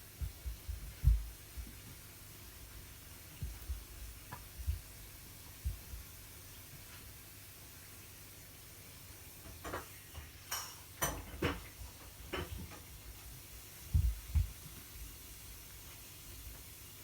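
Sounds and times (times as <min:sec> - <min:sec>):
cats scuffling: 0:00.0 - 0:07.2.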